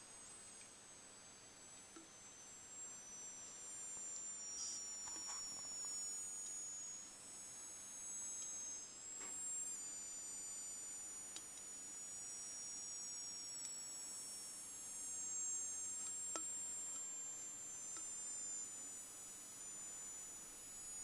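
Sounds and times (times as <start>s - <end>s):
high whistling tones from can: 2.0s - 16.0s.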